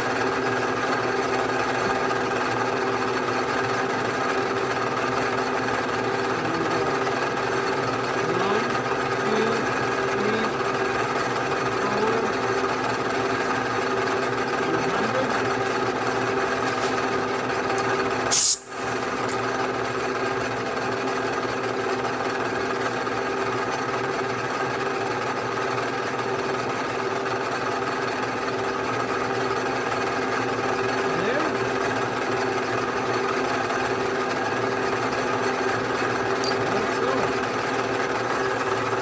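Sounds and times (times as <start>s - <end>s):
milling machine humming and whining: 0.0s - 39.0s.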